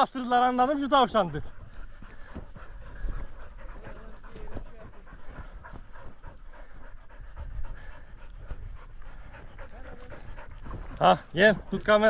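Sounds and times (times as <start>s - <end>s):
dogs panting hard: 0.0s - 12.0s
rustling and crackles: 1.4s - 6.5s.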